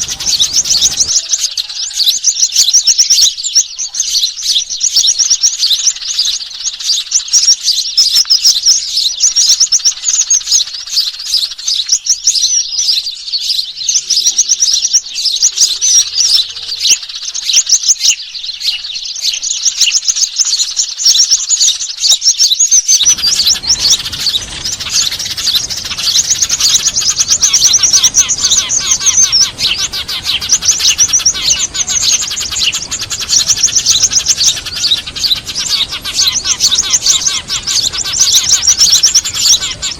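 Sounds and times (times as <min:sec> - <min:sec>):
songbirds chirping and trilling: 0:00.0 - 0:39.9
low background hiss: 0:23.1 - 0:39.9.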